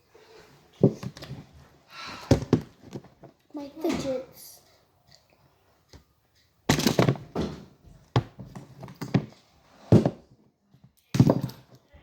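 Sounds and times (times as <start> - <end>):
thuds of objects being handled: 0.8 - 1.5, 2.3 - 4.1, 6.7 - 10.4, 11.1 - 11.8.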